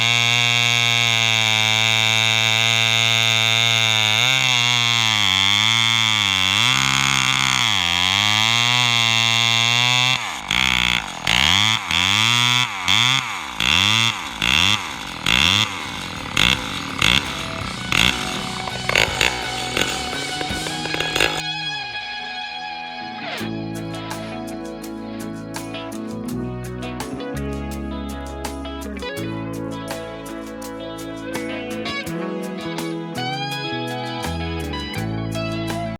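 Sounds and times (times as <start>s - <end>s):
chainsaw revving: 0.0s - 21.7s.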